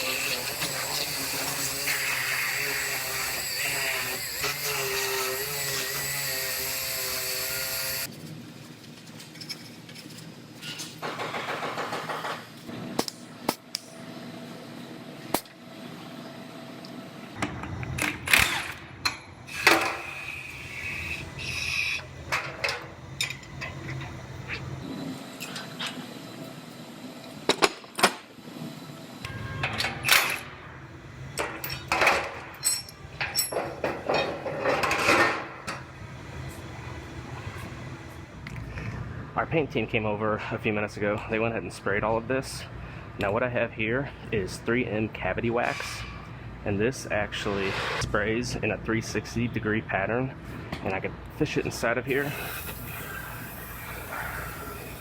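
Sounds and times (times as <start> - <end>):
power tool running: 0.0 - 8.1, 52.1 - 55.0.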